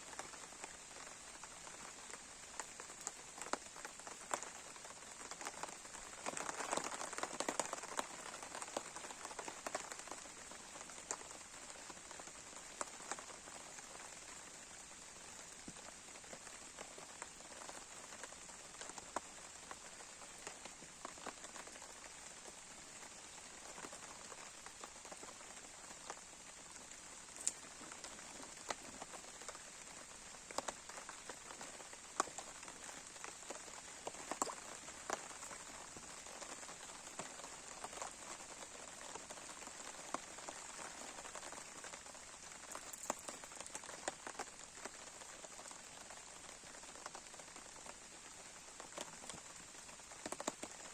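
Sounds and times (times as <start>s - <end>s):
campfire crackling: 22.7s - 48.1s.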